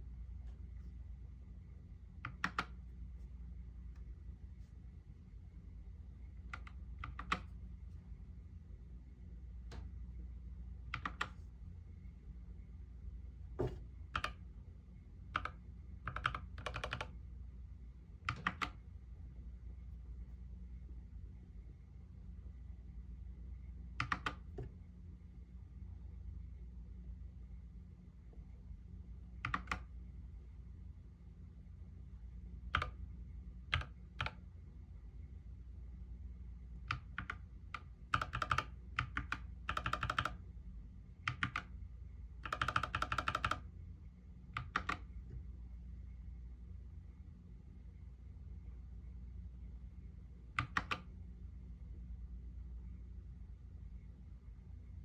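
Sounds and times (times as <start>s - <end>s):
faint low hum: 0.0s - 55.0s
mechanical keyboard typing: 2.3s - 2.8s, 6.6s - 7.5s, 10.9s - 11.4s, 14.2s - 14.4s, 15.4s - 17.2s, 18.3s - 18.8s, 24.0s - 24.6s, 29.4s - 29.9s, 32.7s - 33.0s, 33.7s - 34.4s, 36.9s - 40.4s, 41.3s - 41.7s, 42.4s - 43.6s, 44.6s - 45.1s, 50.6s - 51.1s.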